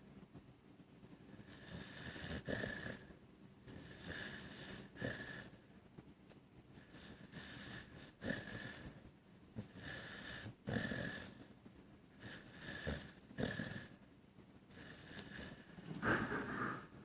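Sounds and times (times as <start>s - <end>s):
puppy snoring: 1.2s - 5.7s, 6.8s - 9.0s, 9.6s - 11.5s, 12.1s - 14.0s, 14.7s - 17.0s.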